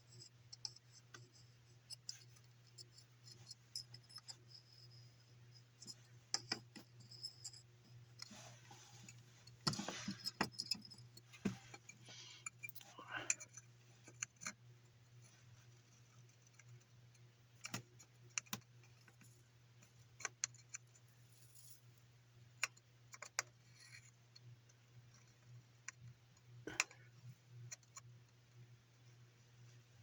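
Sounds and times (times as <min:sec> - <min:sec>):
small hard parts clicking: 0:00.0 - 0:14.6
faint low hum: 0:00.0 - 0:30.0.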